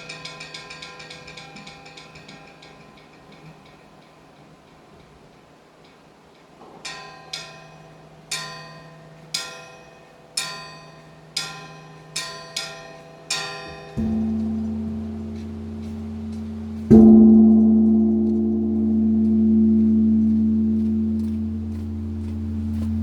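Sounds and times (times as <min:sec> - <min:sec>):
deep temple bell ringing: 0:10.5 - 0:23.0
small metal chime struck: 0:13.6 - 0:23.0.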